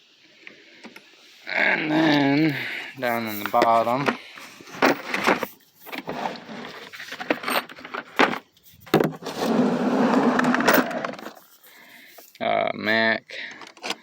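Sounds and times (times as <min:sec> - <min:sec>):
tools scraping in toolbox: 0:03.0 - 0:12.3
metal hand tools clinking and rattling: 0:04.6 - 0:08.8.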